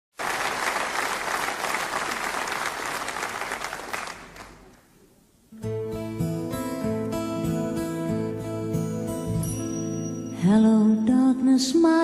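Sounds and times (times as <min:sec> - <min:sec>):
audience applause: 0:00.1 - 0:04.8
acoustic guitar playing: 0:05.5 - 0:12.0.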